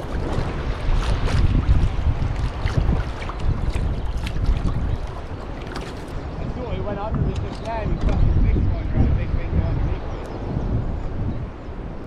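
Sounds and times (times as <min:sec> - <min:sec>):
water lapping against hull: 0:00.0 - 0:08.8
wind buffeting microphone: 0:00.0 - 0:12.0.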